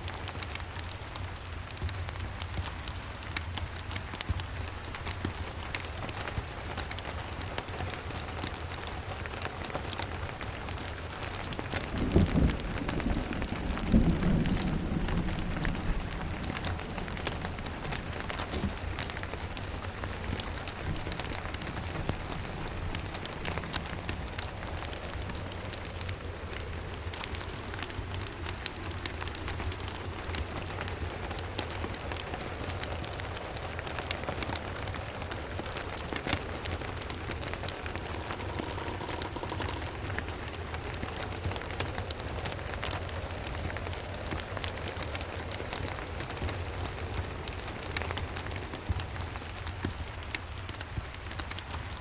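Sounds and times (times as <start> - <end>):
steady rain: 0.0 - 52.0
distant thunder rumble: 11.6 - 46.5.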